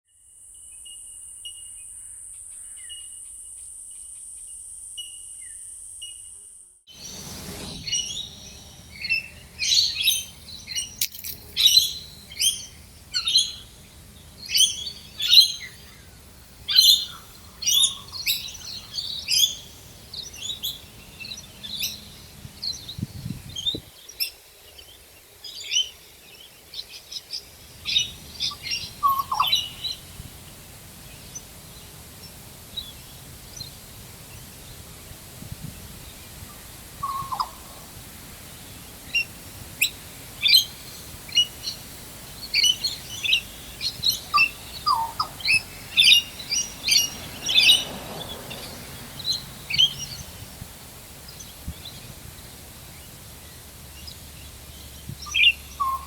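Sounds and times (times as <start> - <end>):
birds high chirps: 6.9 - 56.0
lower bird call: 26.7 - 35.2, 35.8 - 56.0.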